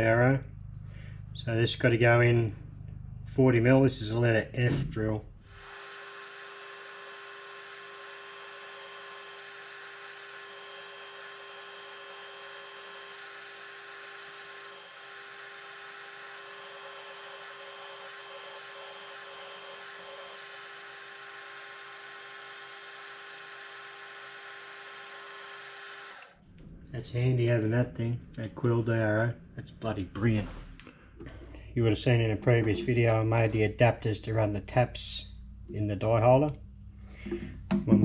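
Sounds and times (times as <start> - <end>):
metal lathe drilling steel: 5.5 - 26.4.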